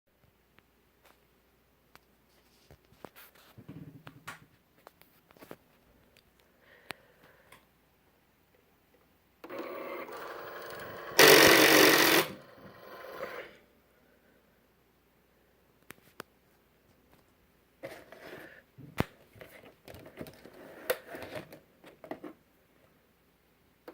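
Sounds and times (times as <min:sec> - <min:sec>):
cutting machine motor running: 0:09.4 - 0:13.5
loud machine grinding: 0:10.0 - 0:13.4.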